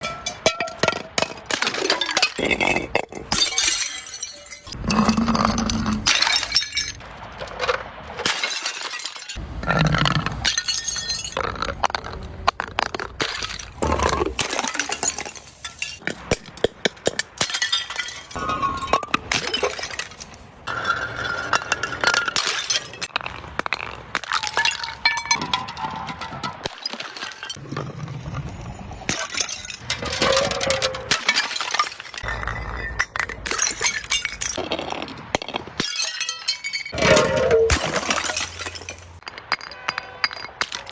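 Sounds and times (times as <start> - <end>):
breaking glass clinking: 0.0 - 4.8, 5.7 - 7.0, 8.2 - 9.4, 10.4 - 11.4, 14.4 - 16.0, 17.1 - 23.1, 29.1 - 34.6, 35.8 - 40.9
glass bottles shattering: 0.0 - 7.0, 8.2 - 11.4, 12.8 - 16.0, 17.0 - 23.1, 24.1 - 27.6, 29.1 - 34.7, 35.4 - 40.9.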